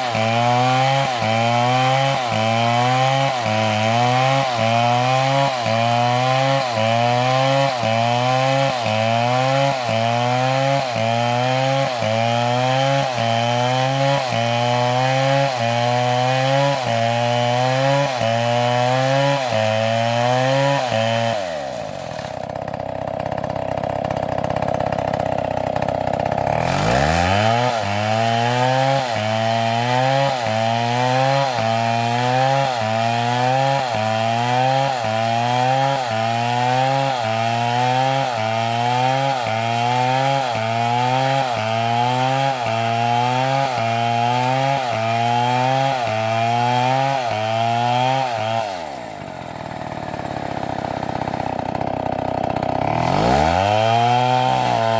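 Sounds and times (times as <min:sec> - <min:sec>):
chainsaw engine running: 0:00.0 - 0:54.9.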